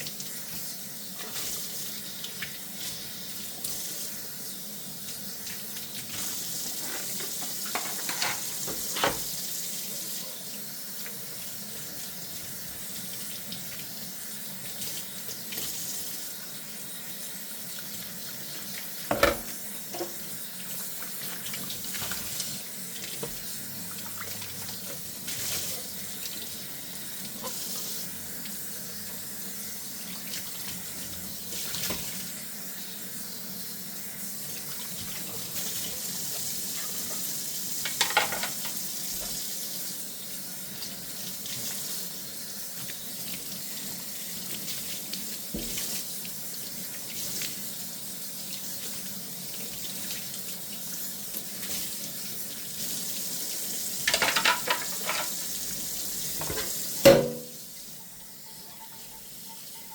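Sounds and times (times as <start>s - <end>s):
tap water running into sink: 0.0s - 59.9s
dishware knocking and clinking: 7.0s - 9.2s, 19.1s - 20.2s, 37.9s - 38.6s, 54.1s - 55.4s, 56.4s - 57.6s.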